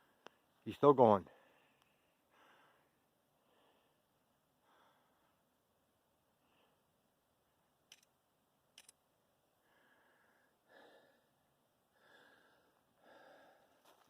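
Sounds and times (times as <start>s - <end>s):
soft breathing: 1.3s - 5.5s, 6.3s - 7.0s, 9.6s - 14.0s.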